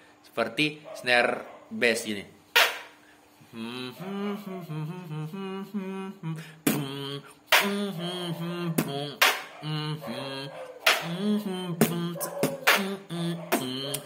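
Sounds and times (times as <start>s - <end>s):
beatbox snare and bass hits: 2.6s - 3.0s, 6.6s - 8.0s, 8.8s - 9.5s, 10.9s - 14.0s
person humming a melody: 3.4s - 14.0s.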